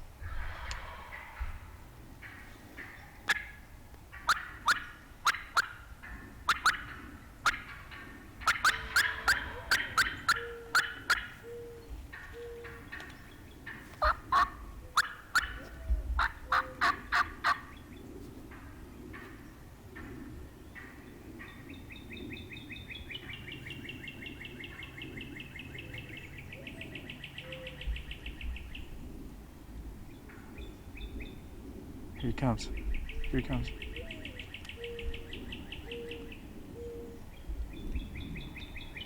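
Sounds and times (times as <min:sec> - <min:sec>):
turkey sharp loud clucks: 0:02.2 - 0:13.1, 0:13.7 - 0:17.7
turkey rapid high trill: 0:04.3 - 0:05.8, 0:06.5 - 0:06.8, 0:08.4 - 0:11.3, 0:14.0 - 0:15.6.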